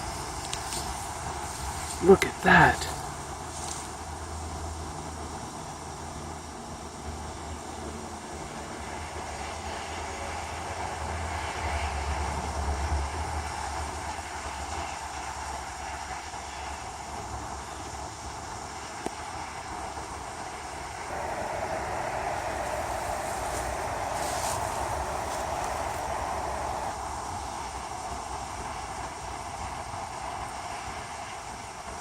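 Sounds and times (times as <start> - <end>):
distant highway traffic: 0.0 - 28.1
wind rumble on microphone: 21.1 - 30.4.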